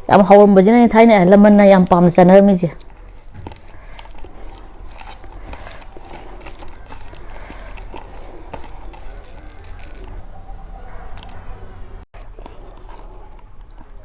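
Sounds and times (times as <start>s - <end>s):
chewing and biting: 1.9s - 11.5s, 12.1s - 14.0s
mouth clicks and smacks: 2.7s - 10.3s.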